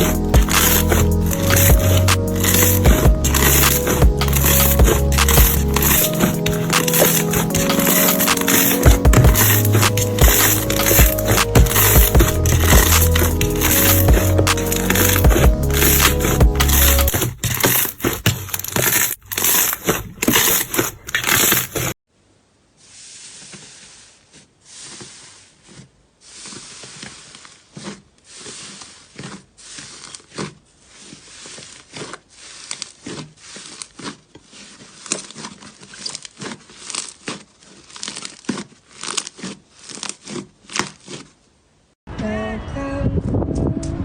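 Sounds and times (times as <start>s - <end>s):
slime squeezed and crackling: 28.4s - 41.3s.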